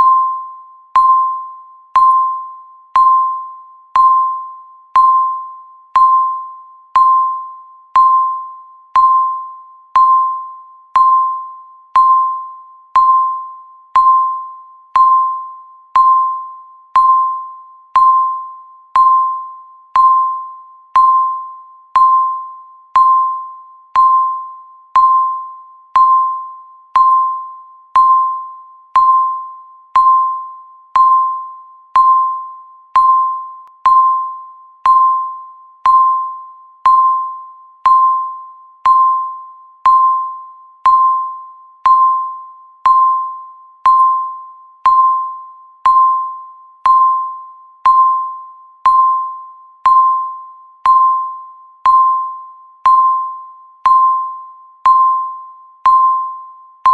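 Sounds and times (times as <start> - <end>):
electronic timer beeps: 0.0 - 56.9.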